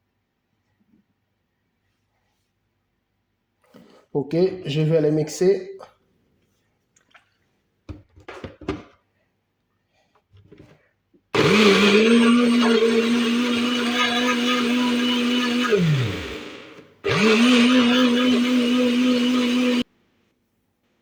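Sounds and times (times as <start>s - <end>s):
blender running: 11.4s - 19.8s.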